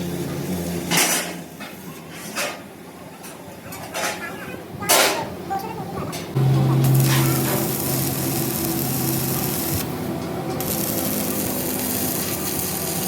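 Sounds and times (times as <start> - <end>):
power tool humming with rubbing: 6.4 - 13.0.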